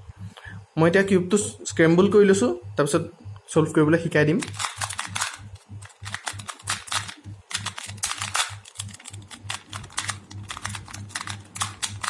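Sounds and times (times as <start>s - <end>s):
plastic puzzle cube clicking: 4.4s - 12.0s.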